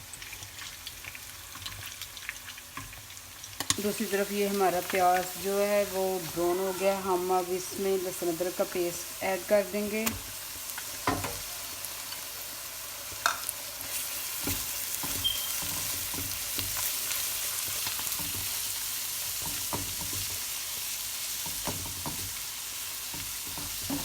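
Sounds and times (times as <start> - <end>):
onions sizzling in oil: 0.0 - 24.0
spoon scraping a pan: 6.2 - 7.5, 13.2 - 18.7.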